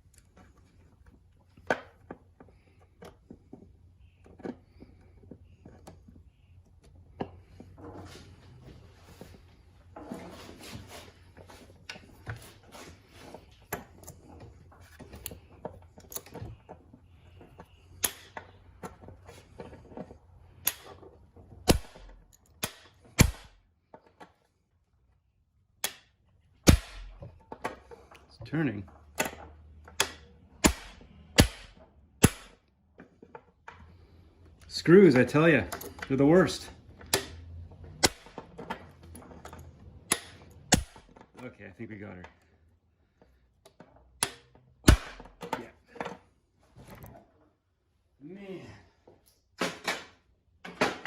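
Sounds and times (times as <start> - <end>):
metal clicks and tool clatter: 13.2 - 23.0, 35.6 - 36.2
hammer striking impact driver: 21.7 - 23.6, 26.7 - 27.3, 30.0 - 32.6, 38.0 - 38.4, 40.1 - 41.1, 44.2 - 45.4.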